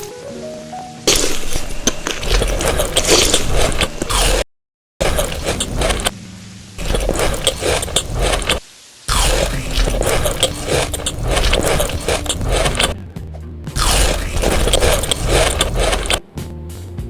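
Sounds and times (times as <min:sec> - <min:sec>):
crunching food: 0:01.1 - 0:04.4, 0:05.0 - 0:06.2, 0:06.8 - 0:13.0, 0:13.8 - 0:16.2.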